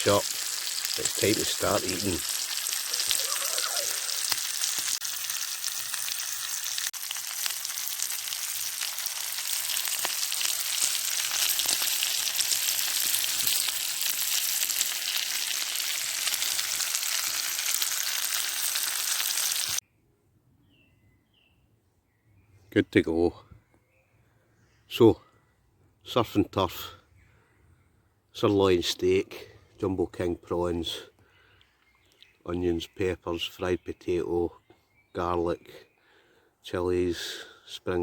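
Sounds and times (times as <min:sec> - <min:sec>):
food sizzling in a skillet: 0:00.0 - 0:19.8.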